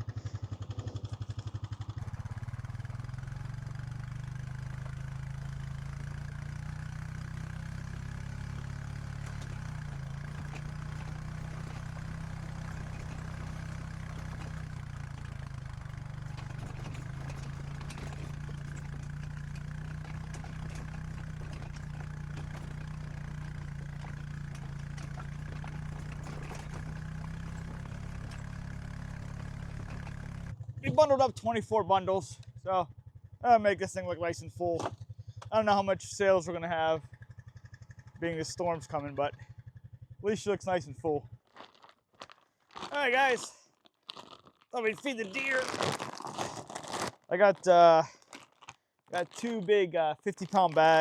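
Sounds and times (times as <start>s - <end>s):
vehicle engine running: 0.0s - 43.5s, 44.1s - 51.0s
faint clicks and rattles: 7.7s - 30.5s.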